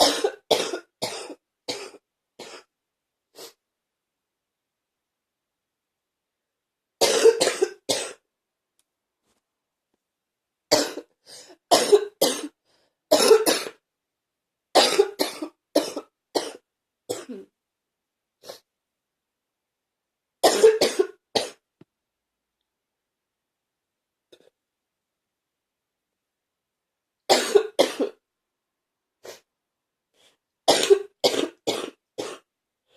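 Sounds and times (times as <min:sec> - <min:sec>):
person coughing: 0:00.0 - 0:02.7, 0:07.0 - 0:08.2, 0:10.7 - 0:13.8, 0:14.8 - 0:17.5, 0:20.4 - 0:21.6, 0:27.3 - 0:28.2, 0:30.7 - 0:32.5.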